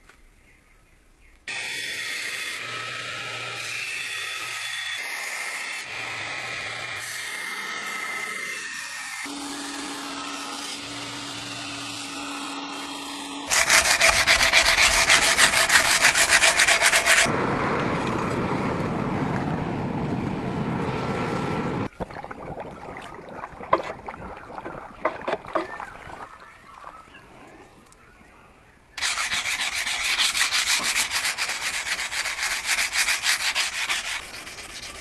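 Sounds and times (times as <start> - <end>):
grinding steel: 6.4 - 17.3, 29.0 - 35.0
fast rasping on steel: 13.5 - 17.3, 29.0 - 35.0
quiet scraping: 22.7 - 28.0.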